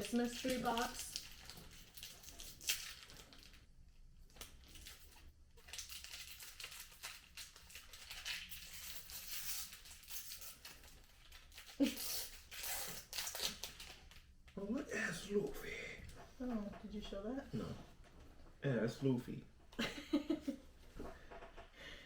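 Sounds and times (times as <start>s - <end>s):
plastic packaging crinkling and tearing: 0.0s - 14.3s.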